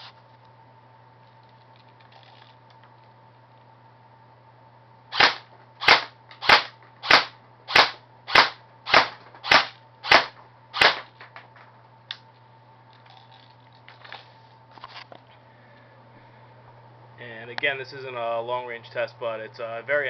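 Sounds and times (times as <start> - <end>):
airsoft gun shots: 5.1 - 11.2.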